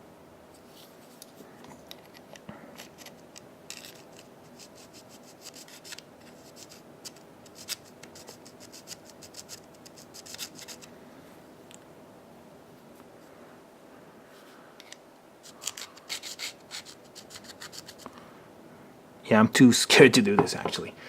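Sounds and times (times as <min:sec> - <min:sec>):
metal knife parts scraping: 0:14.8 - 0:18.0.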